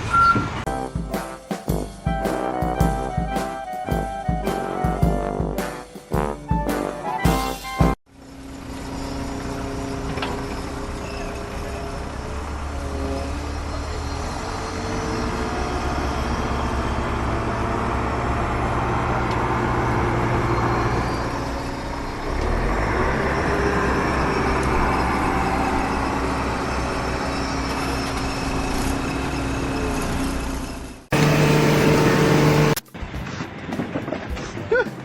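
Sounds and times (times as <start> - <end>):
heavy engine rumble: 7.6 - 34.5.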